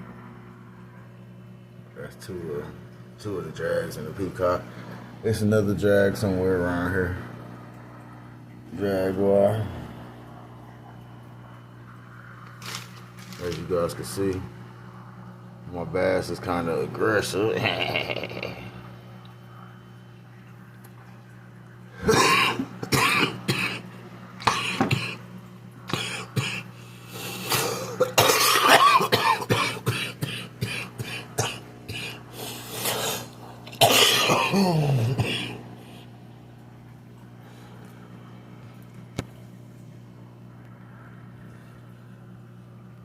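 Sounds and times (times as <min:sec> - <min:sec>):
steady low hum: 0:00.0 - 0:43.0
person coughing: 0:22.0 - 0:25.2, 0:25.9 - 0:26.7, 0:27.4 - 0:32.2, 0:32.8 - 0:35.6.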